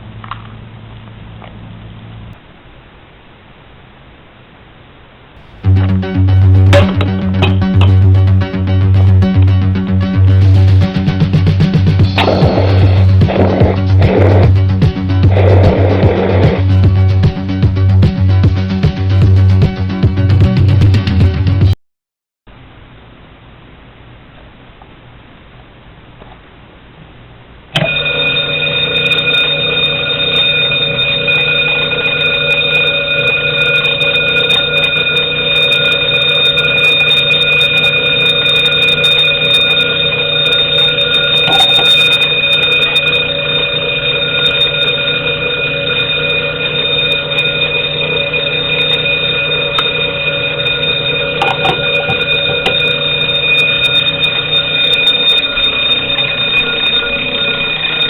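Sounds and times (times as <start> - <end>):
fire alarm bell ringing: 6.7 - 11.3, 12.0 - 16.5, 27.8 - 58.0.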